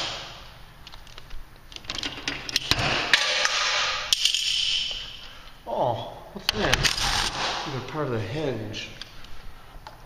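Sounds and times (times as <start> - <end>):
metal clanks and knocks: 1.8 - 4.5.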